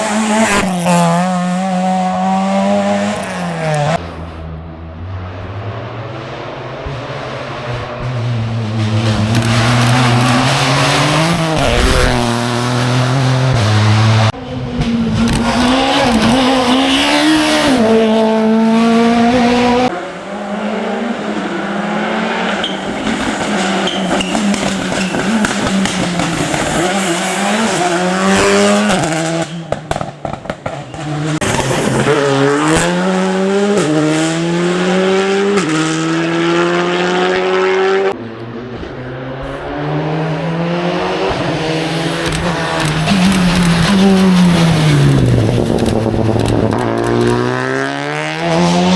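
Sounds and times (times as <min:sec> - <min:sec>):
rally car engines revving: 0:00.0 - 0:48.9.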